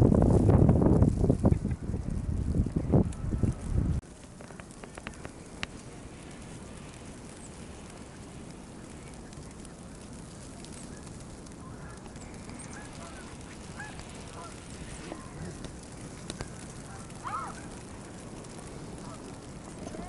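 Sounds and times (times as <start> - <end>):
snowstorm hiss: 0.0 - 20.0
wind gusting on microphone: 0.0 - 20.0
light ticks: 4.4 - 5.8, 15.5 - 20.0.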